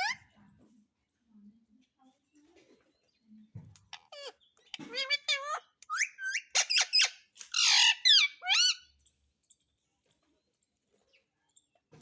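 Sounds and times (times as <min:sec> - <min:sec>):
parrot squawking: 0:00.0 - 0:00.2, 0:03.9 - 0:08.9.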